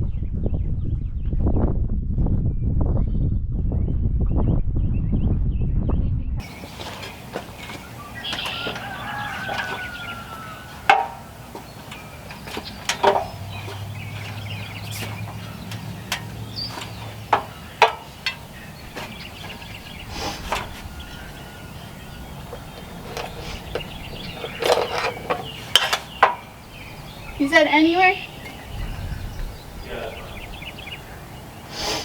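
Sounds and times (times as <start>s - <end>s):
sharp knocks and clicks: 6.4s - 19.8s, 22.4s - 26.5s
outdoor background noise: 6.4s - 32.0s.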